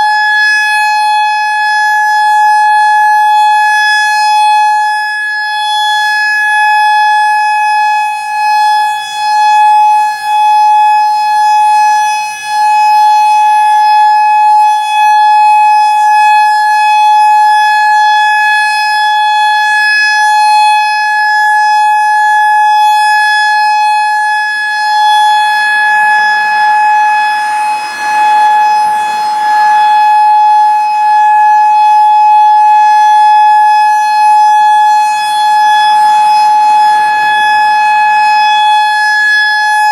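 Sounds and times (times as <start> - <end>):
steady high warning siren: 0.0 - 39.9.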